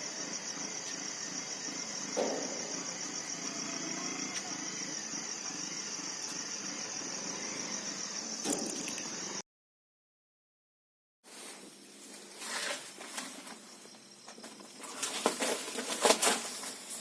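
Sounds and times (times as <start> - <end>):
insect chorus buzzing: 0.0 - 9.4.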